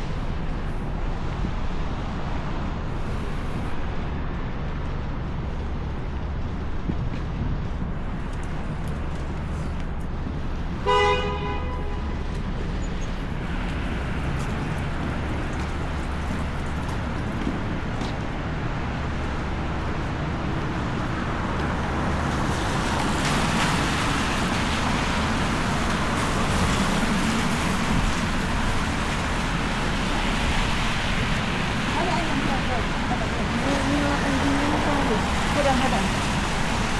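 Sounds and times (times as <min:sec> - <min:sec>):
street traffic: 0:00.0 - 0:36.9
car horn: 0:10.8 - 0:12.2.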